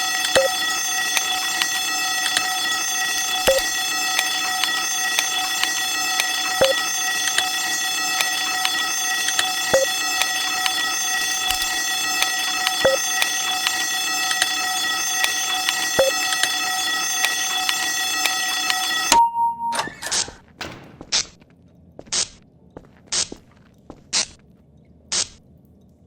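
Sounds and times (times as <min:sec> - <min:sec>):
door alarm high tone: 0:00.0 - 0:20.4
short beep: 0:16.0 - 0:16.3, 0:19.0 - 0:20.1.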